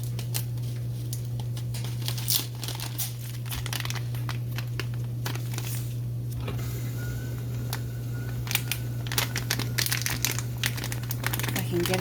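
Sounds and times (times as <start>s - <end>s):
plastic bag crinkling: 0.0s - 6.2s, 7.7s - 12.0s
low hum: 3.4s - 11.6s.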